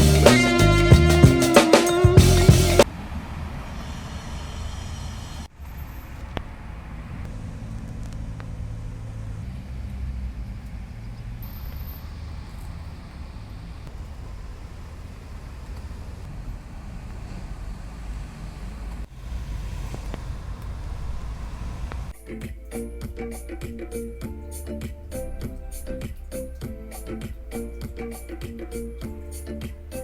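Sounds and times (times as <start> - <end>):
music: 0.0 - 2.9, 22.2 - 30.0.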